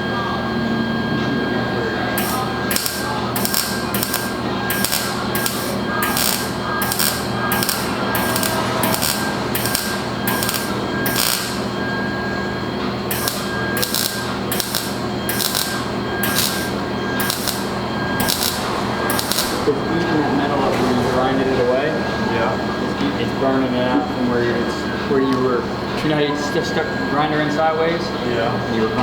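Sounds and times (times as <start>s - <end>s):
steady hum: 0.0s - 22.9s
welder crackling bursts: 2.2s - 11.8s, 13.1s - 19.7s.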